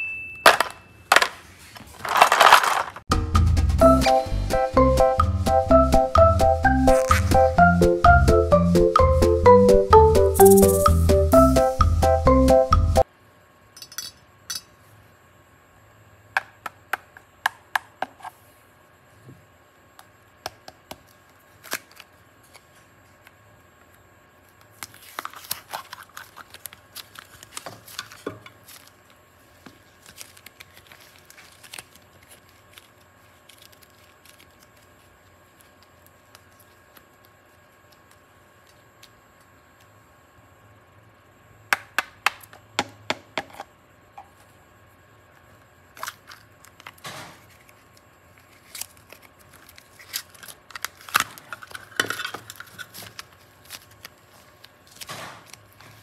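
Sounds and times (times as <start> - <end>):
short music: 3.1 - 13.0
crackly rustling: 24.5 - 39.5.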